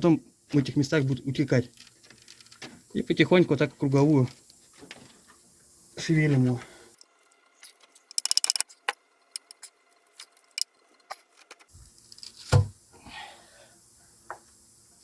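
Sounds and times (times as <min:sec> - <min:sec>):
small metal clicks: 0:01.6 - 0:03.0, 0:07.0 - 0:12.6.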